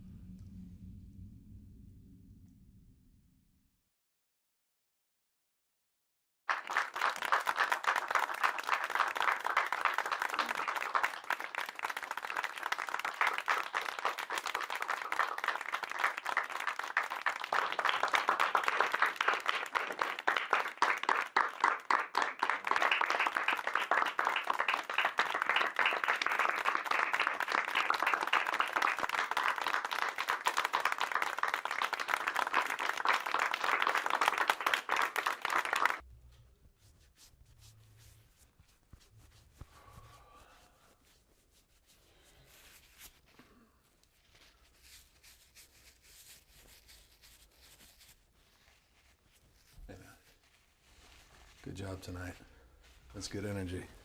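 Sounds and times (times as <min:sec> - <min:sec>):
audience applauding: 0:06.5 - 0:36.0.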